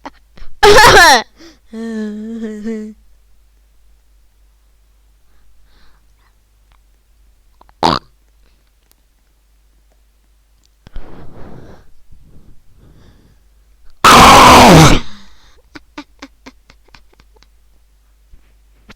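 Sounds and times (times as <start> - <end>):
loud distorted cry: 14.0 - 15.2
person wheezing: 14.1 - 15.6.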